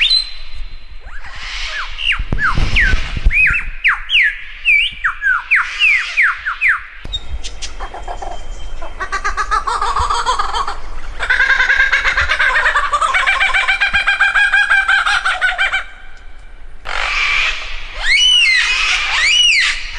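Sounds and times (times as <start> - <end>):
bird whistling falling notes: 0.0 - 9.0, 17.0 - 19.9
harsh busy bird call: 0.0 - 16.0.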